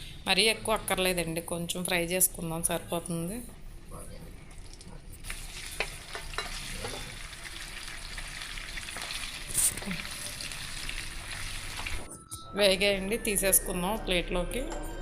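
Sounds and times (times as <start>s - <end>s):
food sizzling in hot oil: 5.2s - 12.1s.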